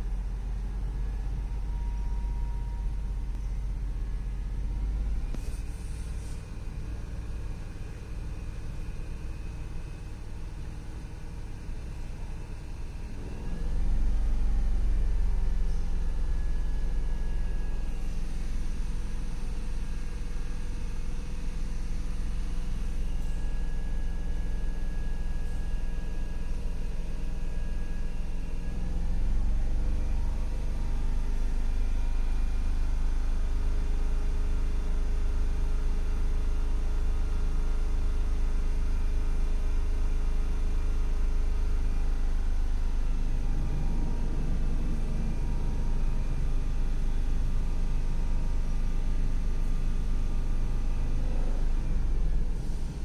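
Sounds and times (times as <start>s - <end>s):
car engine idling: 0.0s - 25.2s.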